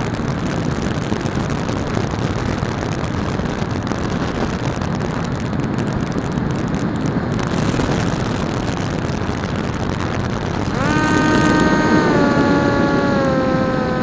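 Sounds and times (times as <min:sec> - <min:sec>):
electric motor and propeller whine: 0:10.2 - 0:14.0.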